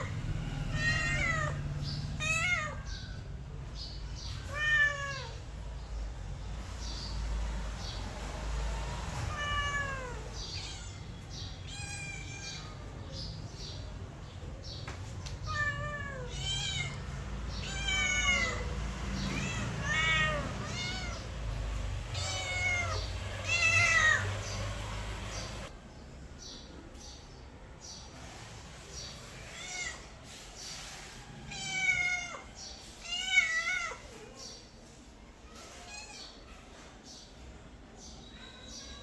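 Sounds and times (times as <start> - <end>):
cat and kitten meowing: 0.0 - 3.3, 4.3 - 5.4, 9.2 - 13.0, 15.3 - 25.7, 31.4 - 34.2.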